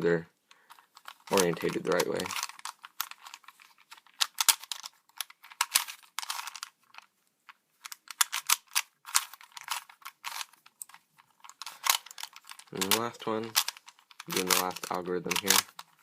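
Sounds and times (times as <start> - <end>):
puzzle cube plastic clicks: 0.5 - 16.0.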